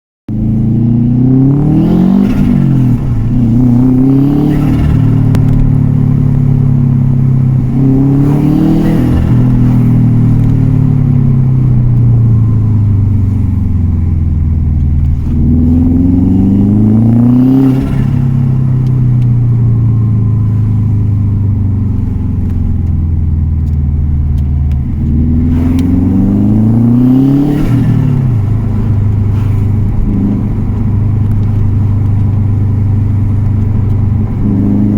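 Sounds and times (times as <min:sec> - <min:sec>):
car engine revving: 0:00.3 - 0:34.9.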